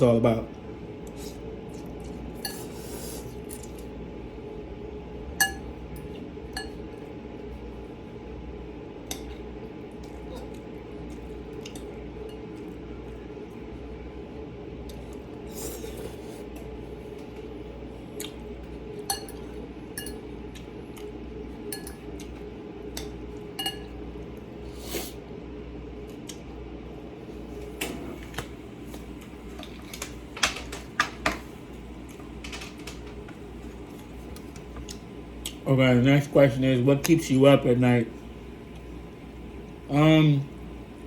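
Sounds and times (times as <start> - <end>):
steady low hum: 0.0 - 41.0
utensils clinking against a bowl: 19.0 - 20.3, 21.7 - 24.0.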